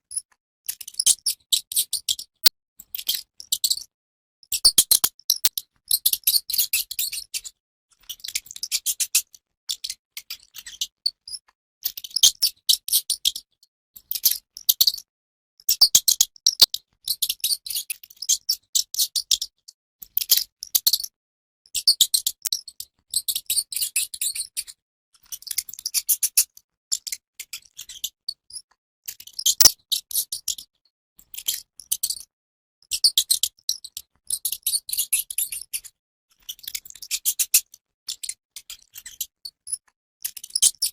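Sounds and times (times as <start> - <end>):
mouse clicking and chittering: 4.7 - 5.1, 15.8 - 16.7.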